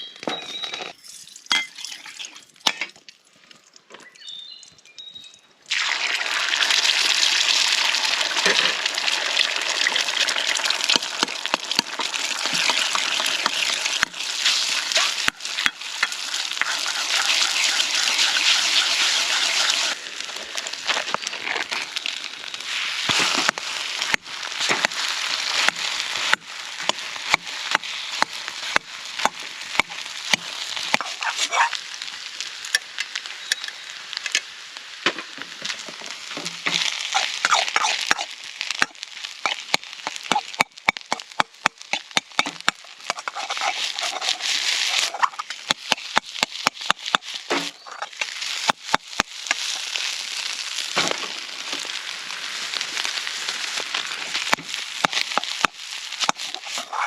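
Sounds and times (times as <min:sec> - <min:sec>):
food sizzling in a wok: 0:05.7 - 0:57.0
utensil scraping a pan: 0:14.4 - 0:20.0, 0:36.8 - 0:38.3, 0:41.9 - 0:45.7, 0:56.2 - 0:57.0.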